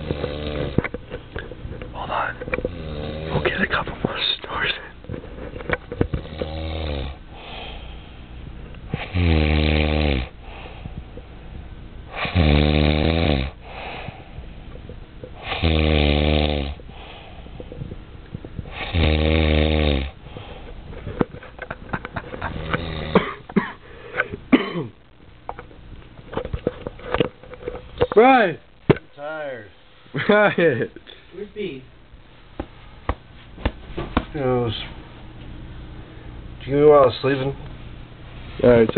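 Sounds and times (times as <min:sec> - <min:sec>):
man snoring: 0:00.0 - 0:00.8, 0:02.7 - 0:03.7, 0:06.2 - 0:07.6, 0:09.0 - 0:10.4, 0:12.1 - 0:14.0, 0:15.4 - 0:17.1, 0:18.7 - 0:20.2, 0:22.5 - 0:23.4.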